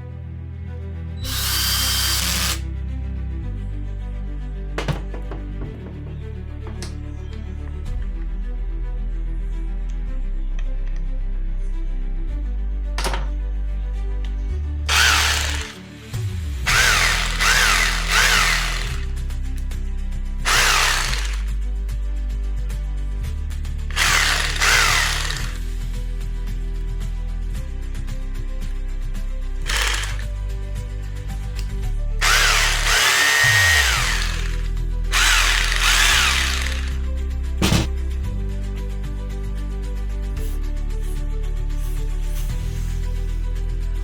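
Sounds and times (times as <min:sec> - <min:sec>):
background music with bass line: 0:00.0 - 0:44.0
power drill bursts: 0:01.2 - 0:02.6, 0:14.9 - 0:15.8, 0:16.7 - 0:19.1, 0:20.5 - 0:21.5, 0:23.9 - 0:25.6, 0:29.7 - 0:30.3, 0:32.2 - 0:37.0, 0:37.6 - 0:37.9.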